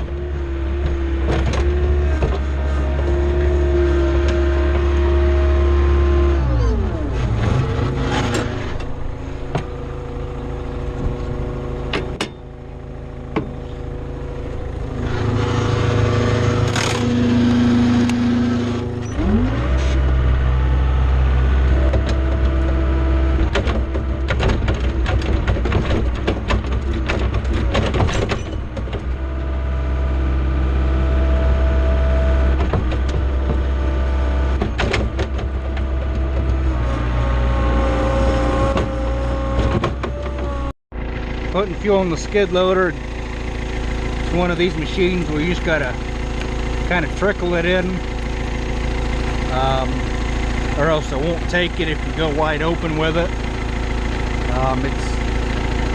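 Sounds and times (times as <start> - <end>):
metal clanks and rattles: 0.0 - 5.0, 7.1 - 17.6, 21.7 - 29.6, 32.4 - 41.6
diesel engine revving: 0.0 - 55.9.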